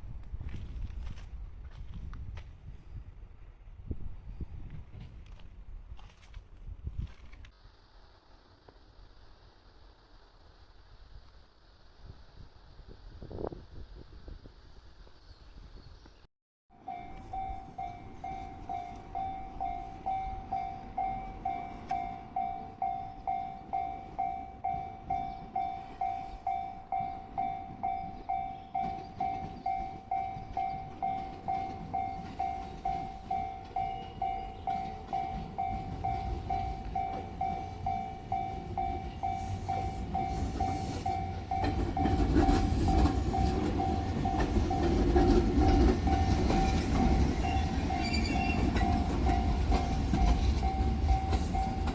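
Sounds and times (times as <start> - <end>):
train rumble: 0.0 - 15.1, 16.8 - 51.9
level-crossing warning bell: 16.7 - 51.9.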